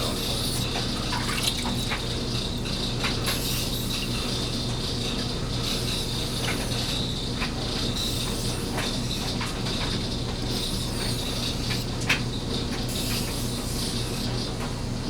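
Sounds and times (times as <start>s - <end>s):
knife scraping on whetstone: 0.0s - 2.0s, 3.3s - 4.2s, 5.6s - 7.1s, 7.9s - 9.4s, 10.5s - 11.9s, 12.9s - 14.4s
background hum and hiss: 0.0s - 15.0s.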